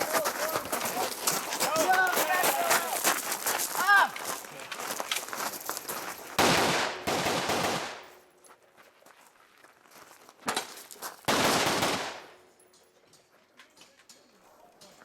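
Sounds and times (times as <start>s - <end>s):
gunshot echo: 6.4s - 8.2s, 11.3s - 12.4s
rifle shots: 6.4s - 8.2s, 11.3s - 12.4s.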